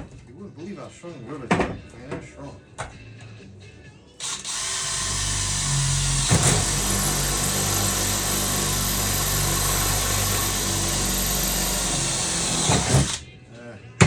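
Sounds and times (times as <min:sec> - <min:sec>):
motor humming: 0:04.2 - 0:13.2.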